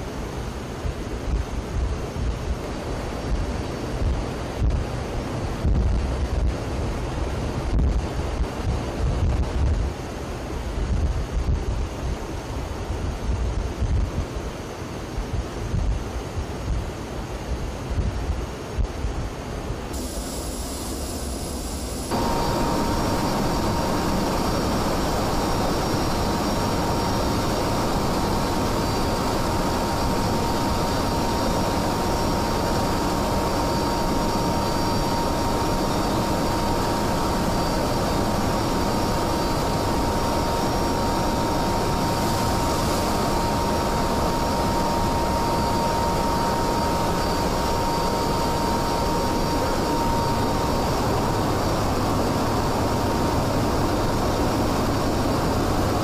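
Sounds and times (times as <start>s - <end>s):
jet engine running: 19.8s - 56.0s.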